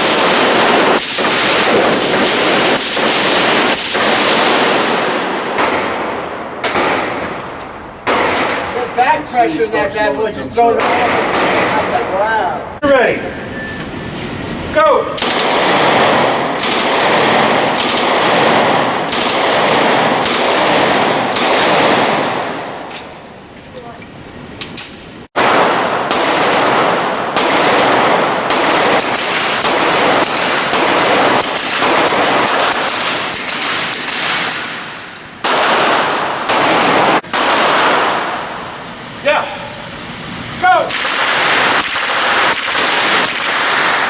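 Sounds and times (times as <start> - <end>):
automatic gunfire bursts: 0.0 - 7.2, 15.2 - 22.4, 25.4 - 34.5, 40.9 - 44.0.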